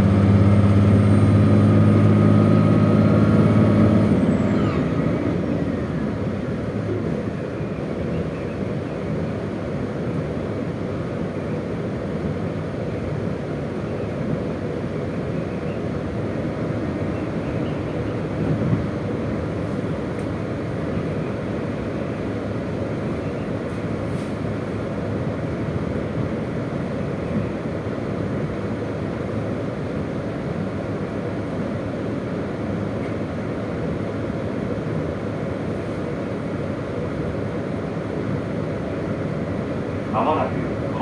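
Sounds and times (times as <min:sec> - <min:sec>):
diesel engine rumble: 0:00.0 - 0:07.6, 0:28.8 - 0:41.0.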